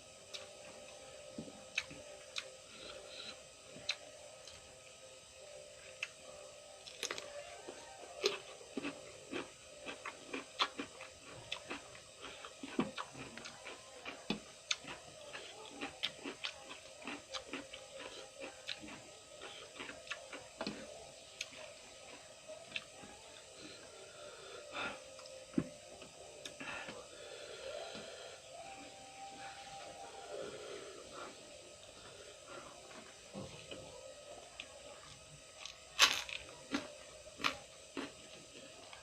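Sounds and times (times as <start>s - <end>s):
faint steady hum: 0.0s - 39.0s
chewing crunchy vegetables: 0.3s - 4.6s, 6.8s - 23.9s, 34.5s - 39.0s.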